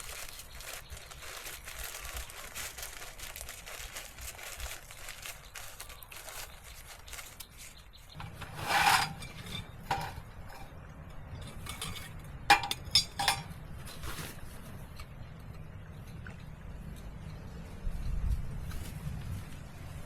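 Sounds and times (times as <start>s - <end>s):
cookware scraping: 8.1s - 14.7s
utensils clinking: 8.1s - 16.2s.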